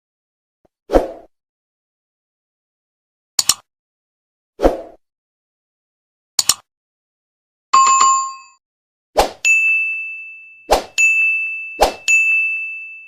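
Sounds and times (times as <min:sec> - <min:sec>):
sharp double click: 0:03.4 - 0:03.7, 0:06.4 - 0:06.7.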